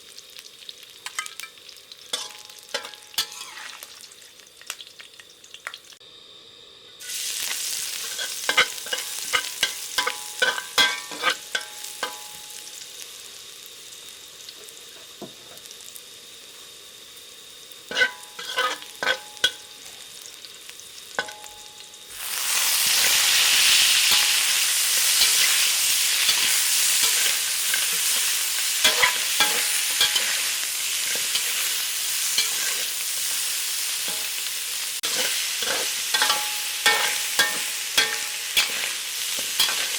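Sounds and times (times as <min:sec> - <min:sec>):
chicken sizzling in a pan: 0:00.0 - 0:39.9
utensil scraping a pan: 0:17.9 - 0:19.3, 0:25.0 - 0:33.4, 0:35.0 - 0:39.9.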